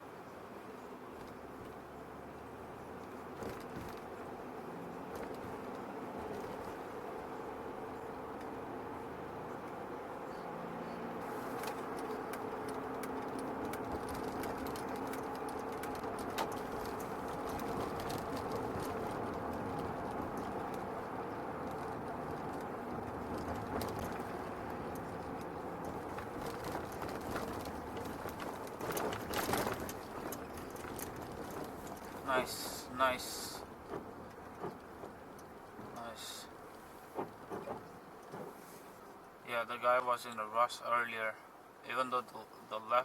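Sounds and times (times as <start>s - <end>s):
car engine and road hum: 0.0s - 43.0s
tyres crackling over packed snow: 1.1s - 7.5s, 11.0s - 41.1s
small clicks: 11.5s - 21.0s.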